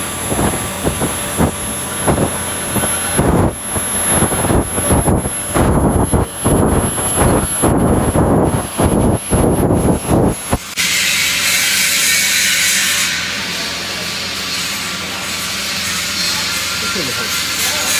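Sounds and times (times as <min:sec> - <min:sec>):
pulsing rushing noise: 0:00.0 - 0:10.8
welding arc hissing: 0:00.0 - 0:17.9.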